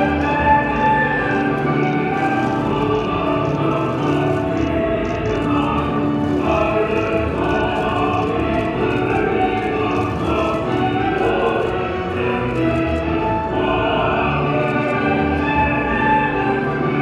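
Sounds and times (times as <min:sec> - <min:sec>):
choir-like voices: 0:00.0 - 0:17.0.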